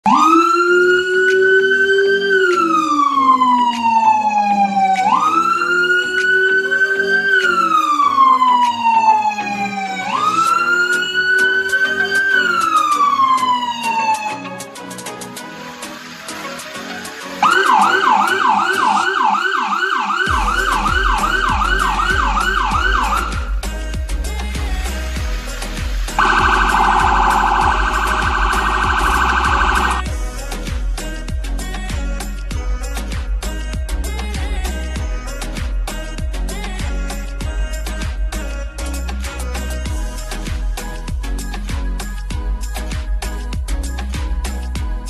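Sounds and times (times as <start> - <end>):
electronic police siren wailing: 0.0 - 14.9, 15.8 - 23.7, 26.2 - 30.1
music with heavy bass beat: 0.0 - 45.0.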